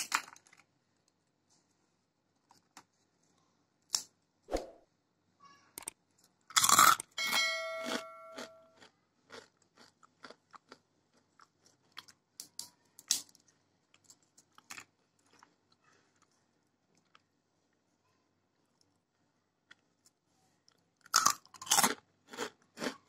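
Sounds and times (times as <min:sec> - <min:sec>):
crunchy snack being chewed: 0:00.0 - 0:00.7, 0:05.8 - 0:07.2, 0:07.9 - 0:17.3, 0:19.7 - 0:23.0.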